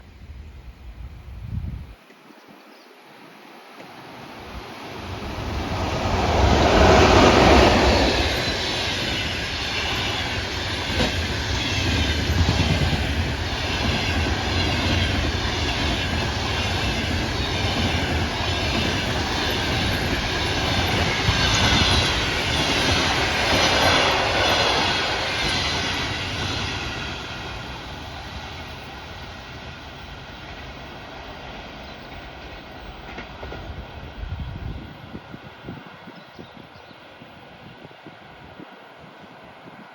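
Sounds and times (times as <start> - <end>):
electric locomotive passing: 4.0 - 39.9
train wheels clickety-clack: 5.5 - 35.0.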